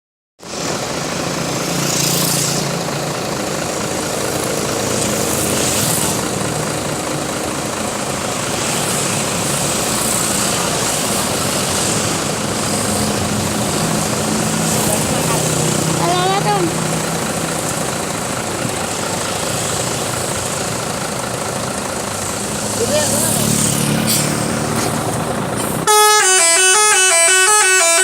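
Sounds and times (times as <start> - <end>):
large vehicle engines running: 0.4 - 28.0
brief hisses: 24.0 - 25.0.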